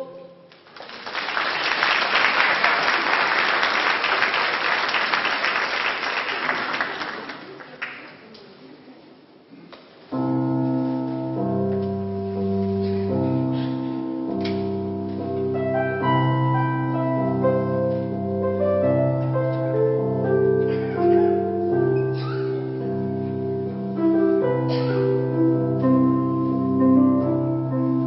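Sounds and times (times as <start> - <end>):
keyboard playing slow chords: 10.2 - 28.0.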